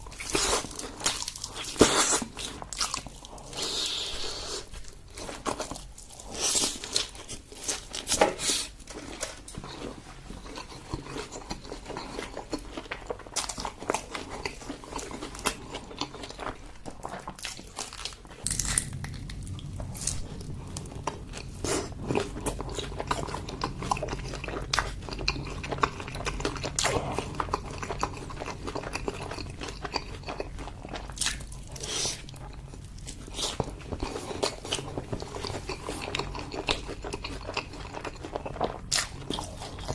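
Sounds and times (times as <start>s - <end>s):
low steady hum: 0.0s - 39.9s
person chewing food: 0.0s - 39.9s.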